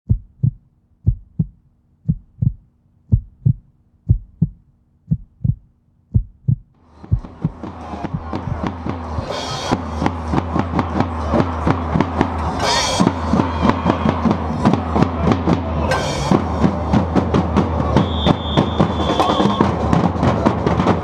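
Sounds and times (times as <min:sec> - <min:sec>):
bass drums beating: 0:00.0 - 0:21.0
fast drum strokes: 0:06.2 - 0:21.0.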